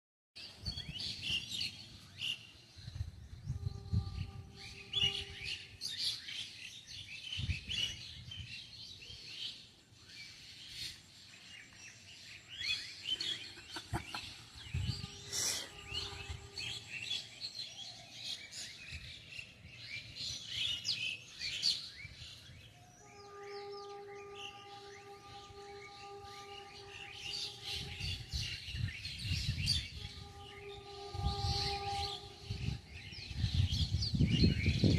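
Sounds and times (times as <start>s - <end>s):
birds chirping and twittering: 0.4s - 34.9s
humming tone with overtones: 2.8s - 5.8s, 13.1s - 17.4s, 22.5s - 34.9s.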